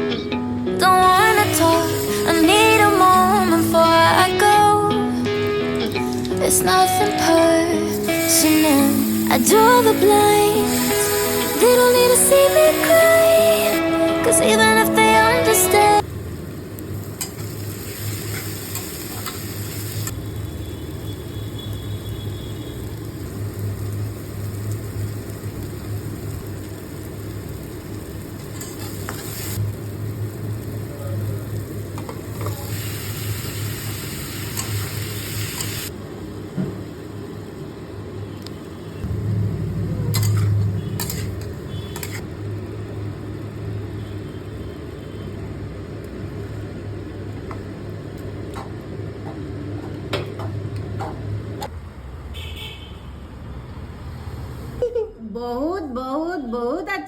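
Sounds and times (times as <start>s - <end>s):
food sizzling in a pan: 1.2s - 4.3s, 7.8s - 36.0s, 39.4s - 44.8s
low hum: 39.0s - 40.9s.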